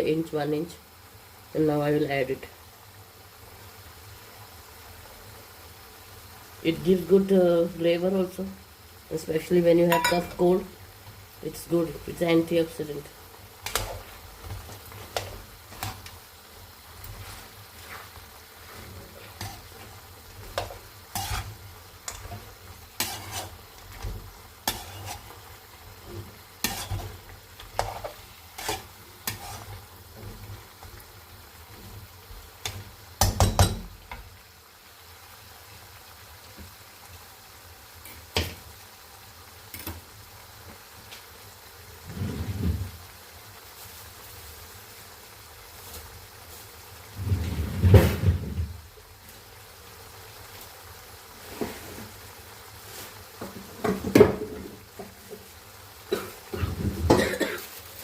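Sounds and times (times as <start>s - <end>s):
meat sizzling in oil: 0.0s - 58.0s
utensil scraping and knocking wok: 9.8s - 10.6s, 13.6s - 16.4s, 17.0s - 31.0s, 31.7s - 34.2s, 52.8s - 55.5s.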